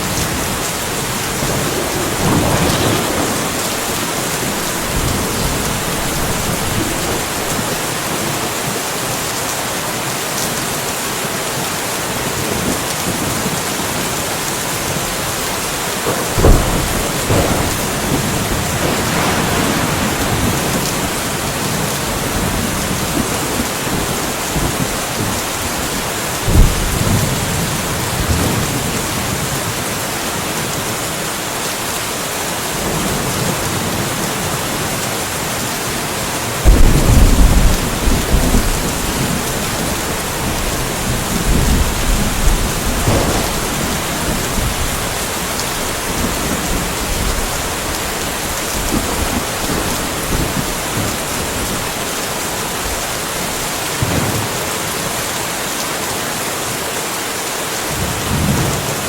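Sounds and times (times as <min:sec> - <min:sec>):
thunder cracks: 0:00.0 - 0:07.9, 0:16.1 - 0:29.4, 0:36.6 - 0:51.9
steady rainfall: 0:00.0 - 0:59.0.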